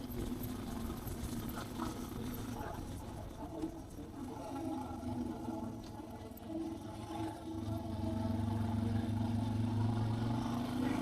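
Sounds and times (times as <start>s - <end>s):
motorcycle engine running: 6.6s - 11.0s.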